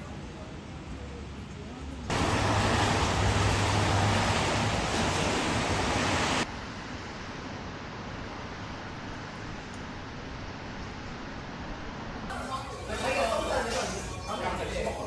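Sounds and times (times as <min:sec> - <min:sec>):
sea waves rushing: 0:02.1 - 0:06.4.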